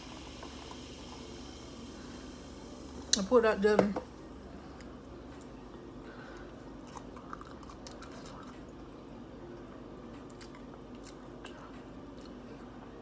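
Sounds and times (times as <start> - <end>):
low background hum: 0.0 - 13.0
chewing with wet mouth clicks: 6.8 - 8.8, 10.2 - 11.6.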